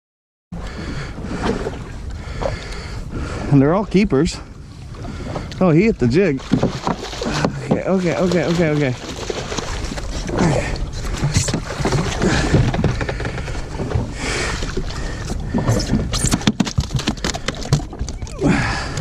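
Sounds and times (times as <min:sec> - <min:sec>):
water sloshing: 0:00.6 - 0:19.0
wind on microphone: 0:09.2 - 0:19.0.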